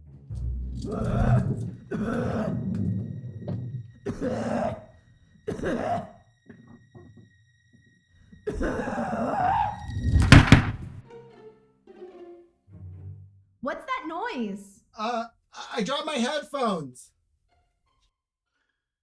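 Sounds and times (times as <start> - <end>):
muffled thuds and knocks: 10.2 - 11.0
sharp clattering thud: 10.2 - 11.0.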